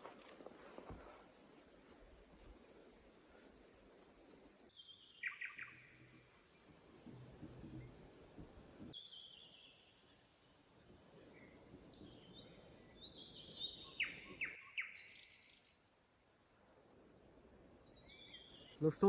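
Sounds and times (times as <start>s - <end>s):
faint low background noise: 0.0s - 19.0s
birds chirping and singing: 11.4s - 15.7s.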